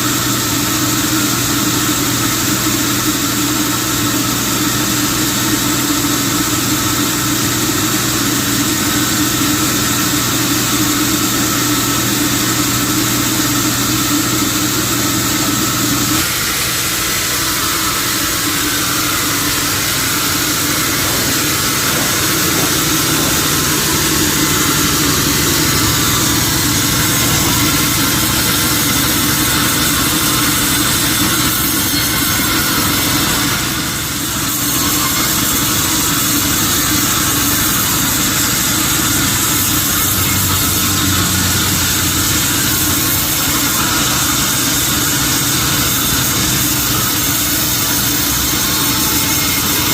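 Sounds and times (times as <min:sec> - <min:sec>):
motor hum: 0:07.7 - 0:34.4.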